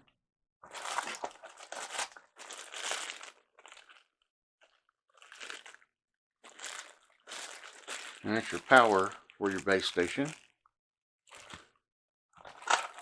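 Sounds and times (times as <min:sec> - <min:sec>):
plastic packaging crinkling: 0:00.7 - 0:04.0, 0:05.2 - 0:05.8, 0:06.4 - 0:10.4, 0:12.5 - 0:13.0.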